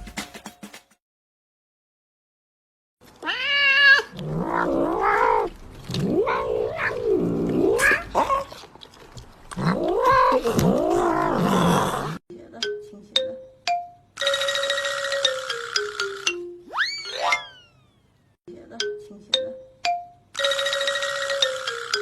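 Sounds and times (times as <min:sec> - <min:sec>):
cats yowling: 0:03.2 - 0:08.6, 0:09.6 - 0:12.2.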